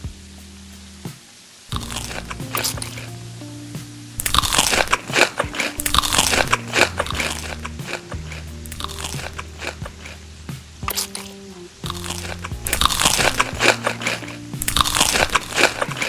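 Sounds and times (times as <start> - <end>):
soft background music: 0.0 - 16.0
person chewing crunchy food: 1.7 - 3.1, 4.2 - 10.2, 10.9 - 16.0.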